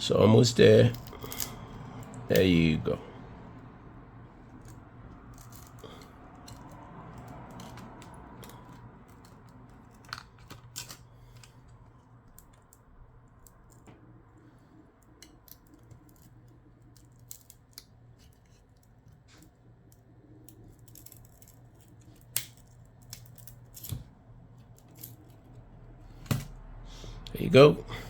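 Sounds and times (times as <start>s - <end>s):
pry tool clicking and scraping: 0.9s - 2.4s, 4.6s - 12.8s.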